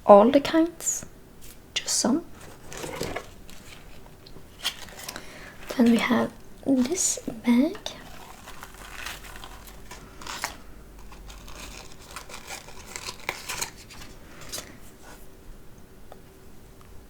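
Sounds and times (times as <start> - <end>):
bag crinkling and rustling: 2.3 - 15.2.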